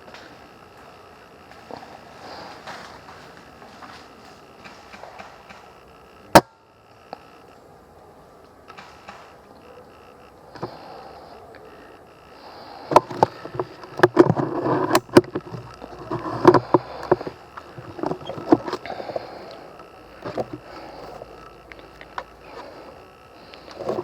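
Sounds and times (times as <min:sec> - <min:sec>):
faint high whine: 0:00.0 - 0:24.0
sharp clicks and knocks: 0:12.9 - 0:19.6.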